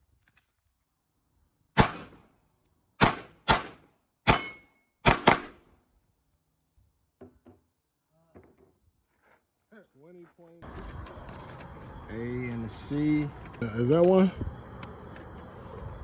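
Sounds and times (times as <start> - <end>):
gunshots with ringing decay: 1.8 - 2.3, 3.0 - 5.7.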